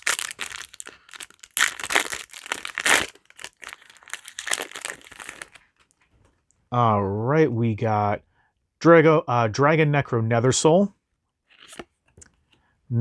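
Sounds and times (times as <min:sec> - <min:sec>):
foil wrapper crinkling: 0:00.0 - 0:06.0.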